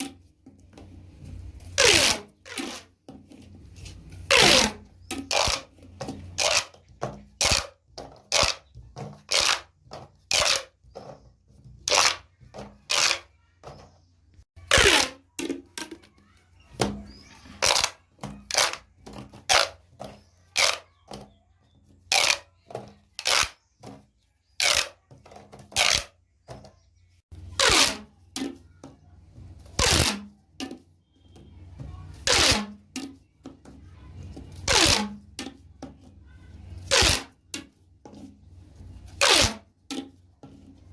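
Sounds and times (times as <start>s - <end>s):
plastic pop tubes crackling: 0.0s - 14.0s, 14.6s - 26.7s, 27.4s - 29.0s, 29.6s - 31.4s, 32.1s - 40.9s.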